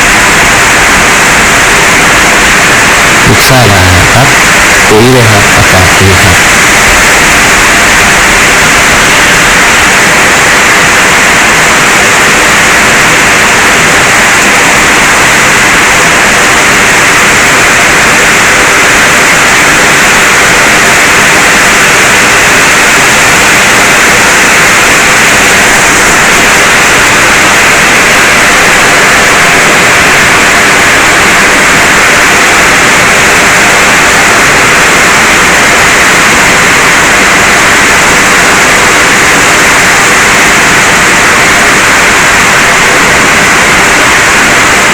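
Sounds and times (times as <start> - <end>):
heavy rain falling: 0.0 - 44.9.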